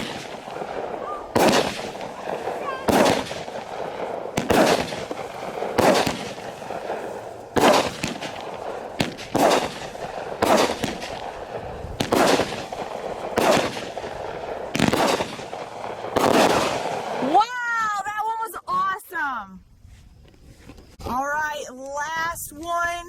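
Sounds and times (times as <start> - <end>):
firework crackling: 0.0 - 18.2
firework reports: 0.0 - 18.4.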